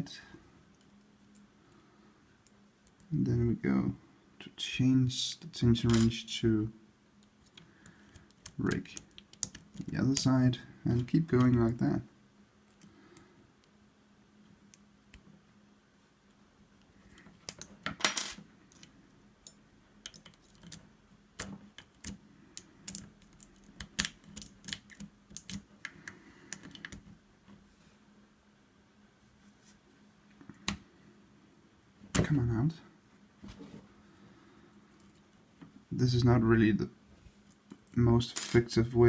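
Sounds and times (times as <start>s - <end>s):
lock picks clicking in a lock: 18.7s - 20.8s, 21.4s - 25.7s.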